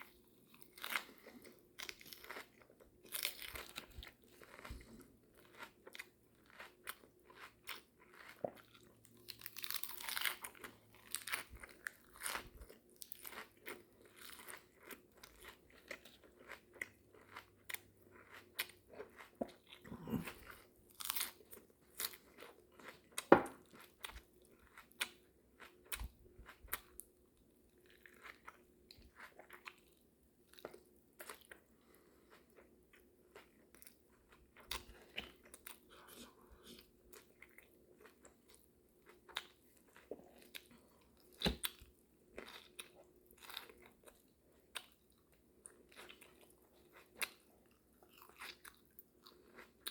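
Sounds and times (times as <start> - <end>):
person chewing with mouth open: 0.0 - 27.1, 27.7 - 49.9.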